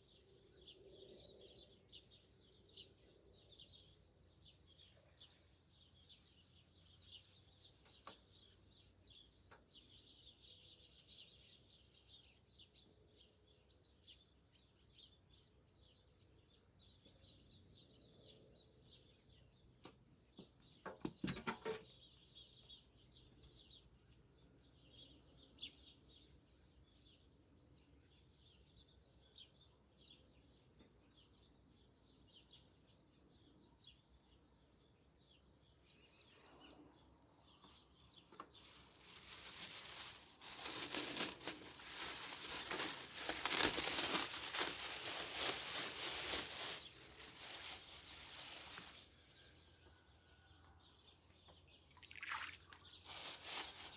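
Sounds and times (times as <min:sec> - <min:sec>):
faint birdsong: 0:00.0 - 0:53.9
loud crinkling rustle: 0:38.4 - 0:49.3, 0:53.0 - 0:53.9.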